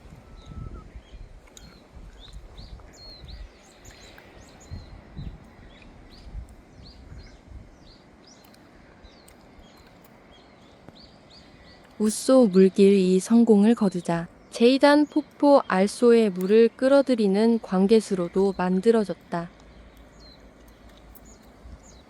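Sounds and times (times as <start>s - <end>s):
low rumbling background noise: 0.0s - 22.0s
small birds chirping: 0.0s - 22.0s.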